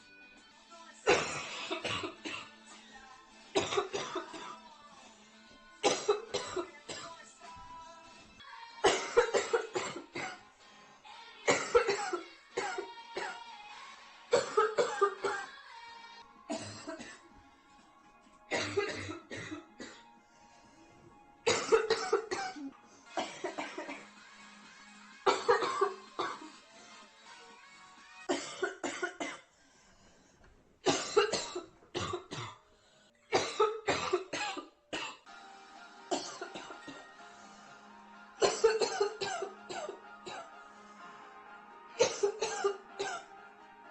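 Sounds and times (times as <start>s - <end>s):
girl coughing: 1.1s - 2.5s, 3.6s - 4.6s, 5.8s - 7.0s, 8.8s - 10.4s, 11.5s - 13.4s, 14.3s - 15.5s, 16.5s - 17.2s, 18.5s - 20.0s, 21.5s - 24.0s, 25.3s - 26.5s, 28.3s - 29.4s, 30.8s - 32.6s, 33.3s - 35.2s, 36.1s - 37.0s, 38.4s - 40.5s, 42.0s - 43.3s.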